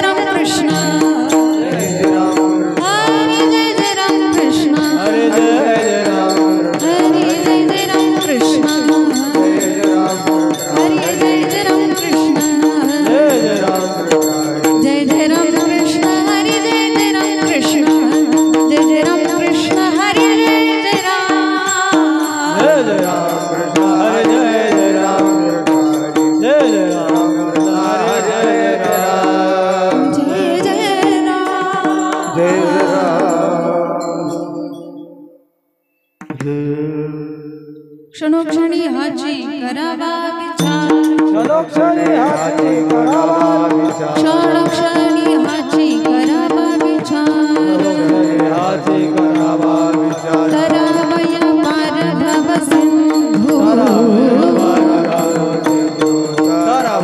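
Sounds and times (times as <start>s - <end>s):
drum and percussion: 0.0s - 35.4s, 36.1s - 57.0s
person singing melismatic lines: 0.0s - 35.5s, 36.3s - 57.0s.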